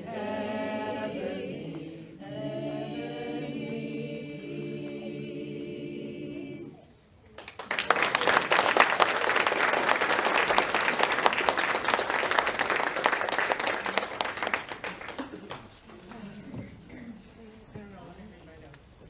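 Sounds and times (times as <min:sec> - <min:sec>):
audience applauding: 0:07.4 - 0:15.9.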